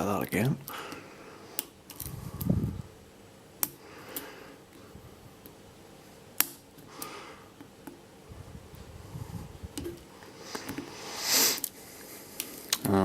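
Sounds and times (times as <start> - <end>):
breath-like hiss: 10.3 - 12.7.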